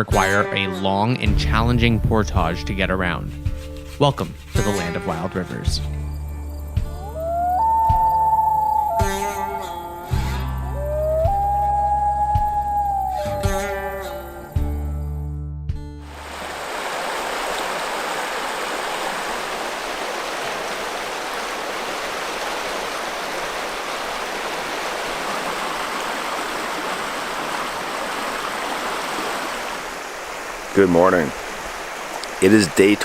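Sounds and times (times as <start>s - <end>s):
music: 0.0s - 16.2s
whitewater river roar: 16.2s - 32.5s.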